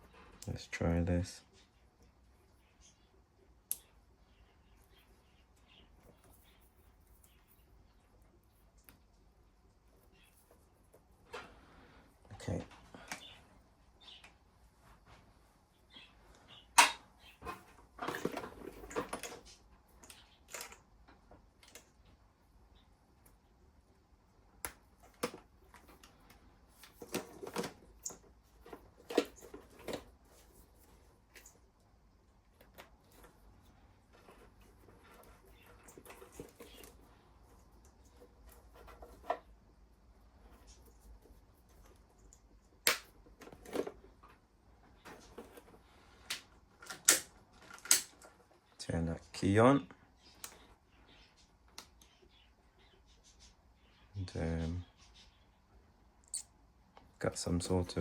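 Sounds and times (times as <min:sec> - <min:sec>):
rustling and small knocks: 0:03.7 - 0:22.2, 0:23.0 - 0:48.7
hands handling wiring: 0:24.5 - 0:48.6.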